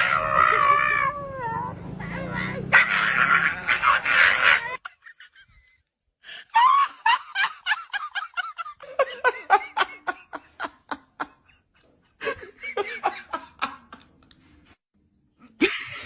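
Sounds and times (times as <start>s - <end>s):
person laughing: 3.3s - 14.5s.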